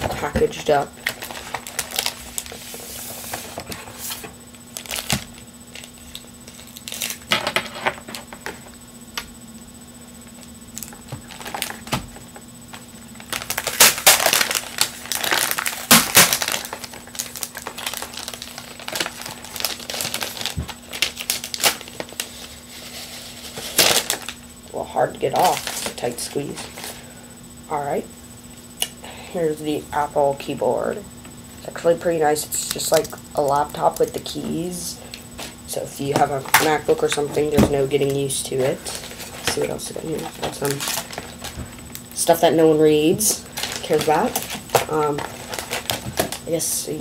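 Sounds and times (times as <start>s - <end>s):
packaging rustling and crinkling: 0.0s - 7.3s, 10.8s - 24.4s, 25.4s - 27.0s, 38.6s - 42.1s, 43.3s - 46.5s
faint steady hum: 0.0s - 47.0s.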